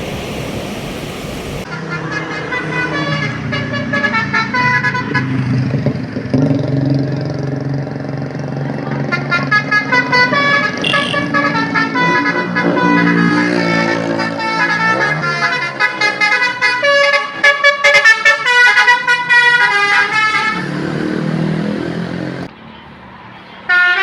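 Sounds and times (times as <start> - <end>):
low steady drone: 0.0 - 1.7
bus musical air horn: 1.0 - 5.8, 9.0 - 21.1, 23.7 - 24.0.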